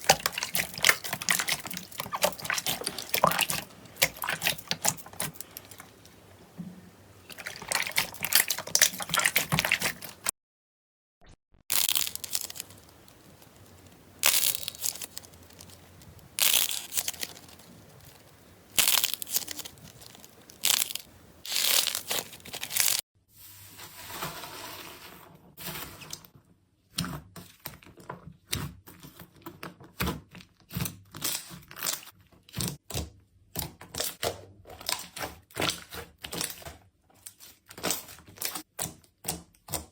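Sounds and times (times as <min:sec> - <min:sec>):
slime crackling and popping: 0:00.0 - 0:06.2, 0:07.3 - 0:10.3, 0:11.7 - 0:23.0
slime squelching: 0:00.0 - 0:10.3, 0:11.7 - 0:23.0.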